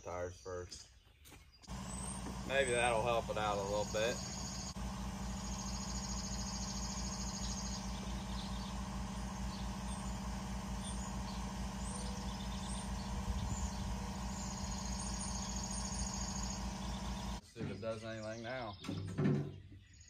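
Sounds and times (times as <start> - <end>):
birds chirping: 0.0 - 20.0
air compressor pulsing: 1.7 - 17.4.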